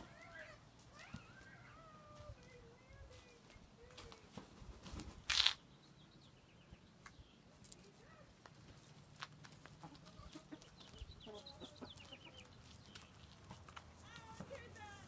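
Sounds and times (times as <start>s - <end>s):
chickens clucking: 8.8s - 14.9s.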